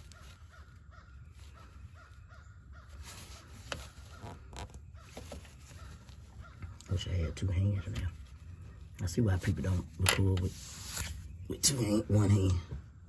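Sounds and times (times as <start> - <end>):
faint crow cawing: 0.0 - 8.9.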